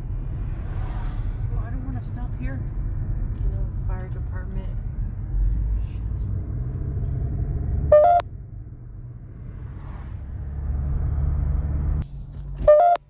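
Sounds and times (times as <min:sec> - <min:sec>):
road and engine rumble: 0:00.0 - 0:13.0
short loud beep: 0:07.9 - 0:08.2, 0:12.6 - 0:13.0.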